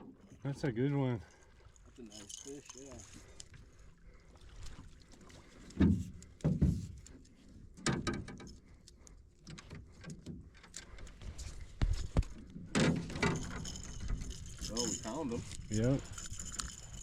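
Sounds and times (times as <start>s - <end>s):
thumps against boat hull: 5.8s - 7.0s.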